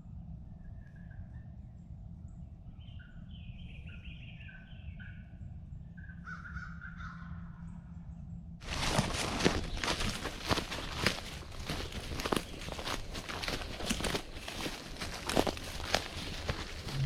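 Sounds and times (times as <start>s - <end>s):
birds calling: 2.4s - 7.9s, 8.6s - 17.0s
low rumble: 14.3s - 17.0s.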